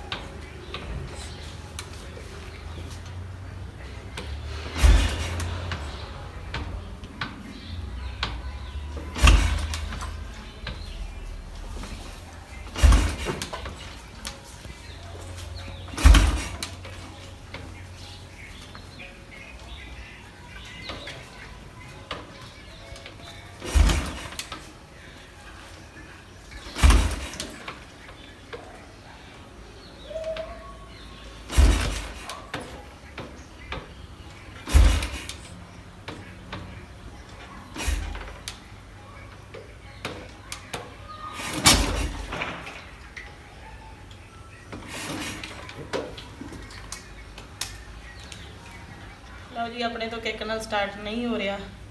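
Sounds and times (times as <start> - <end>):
motorcycle kickstart thud: 0.0 - 24.8, 26.5 - 28.7, 31.4 - 38.7, 39.5 - 43.3, 44.7 - 48.4
birds chirping faintly: 0.0 - 51.9
motorcycle kickstarter thump: 4.2 - 7.4, 8.2 - 14.4, 15.6 - 17.6, 23.6 - 24.7, 26.5 - 27.9, 31.5 - 34.0, 34.6 - 35.5.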